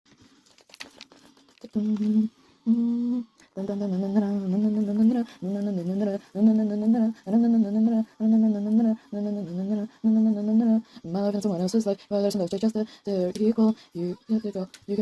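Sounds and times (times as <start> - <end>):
person humming: 1.2 - 15.0.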